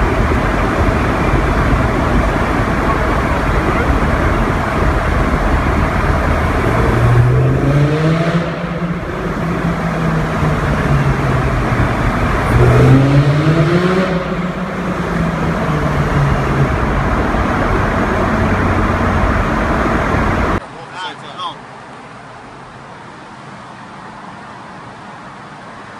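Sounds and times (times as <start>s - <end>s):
car engine accelerating hard: 0.0s - 20.6s
loud road noise: 0.0s - 25.9s.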